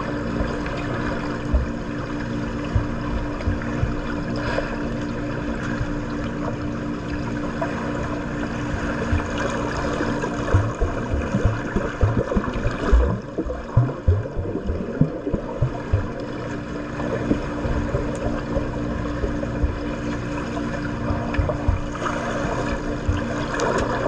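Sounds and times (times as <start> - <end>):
steady low hum: 0.0 - 24.0
low thumps: 1.5 - 1.9, 2.6 - 4.1, 8.7 - 9.5, 10.3 - 16.3, 17.2 - 20.0, 21.1 - 22.0, 23.0 - 23.4
water splashing from swimmer: 8.8 - 20.5.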